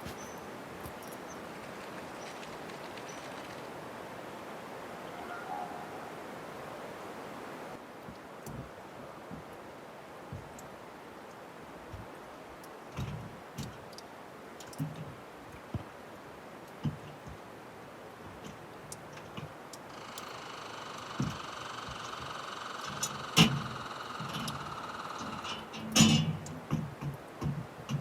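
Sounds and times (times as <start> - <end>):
steady hiss: 6.0 - 28.0
short knocks and clicks: 21.0 - 28.0.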